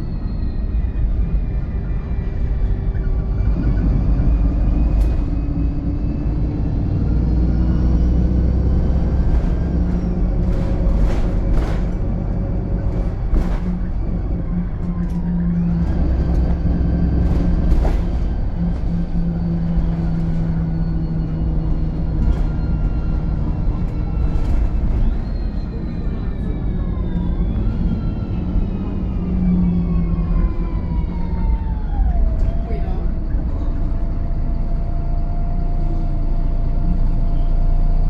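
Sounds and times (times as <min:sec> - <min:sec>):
bus engine whining drone: 0:00.0 - 0:38.0
knocks and rattles: 0:08.6 - 0:25.6.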